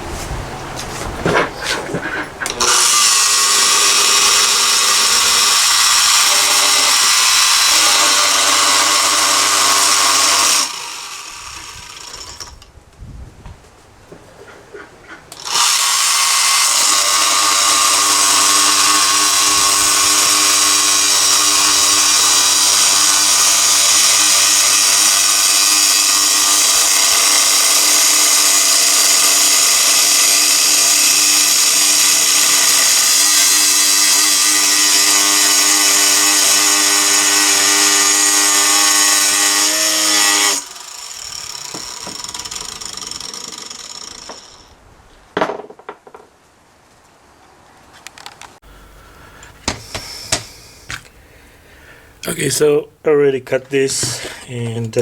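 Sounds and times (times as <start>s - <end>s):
power tool whining: 2.4s - 12.7s, 15.3s - 44.7s.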